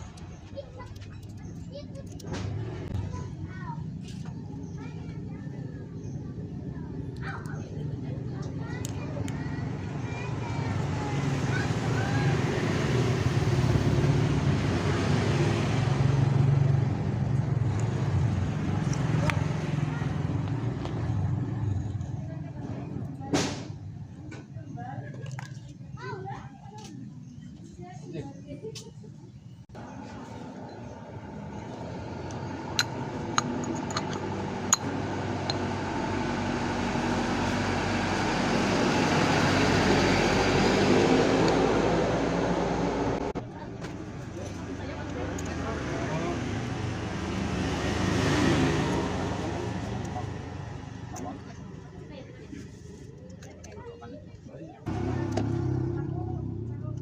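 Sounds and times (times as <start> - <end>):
road noise: 0.0 - 57.0
vehicle engine running: 29.7 - 53.3, 54.8 - 57.0.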